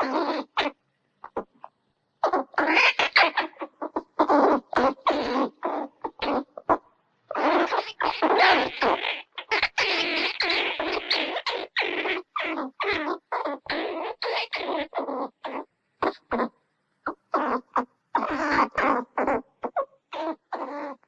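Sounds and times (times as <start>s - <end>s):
squirrel chattering: 0.0s - 21.0s.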